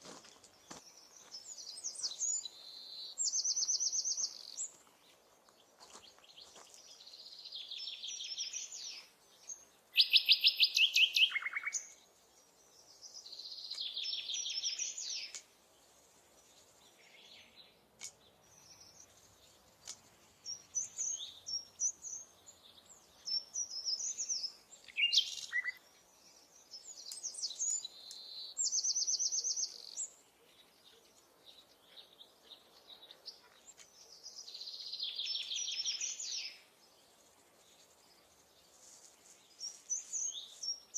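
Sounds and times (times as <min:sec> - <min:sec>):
songbirds trilling: 0:00.3 - 0:40.9
short bird chirps: 0:23.6 - 0:25.8.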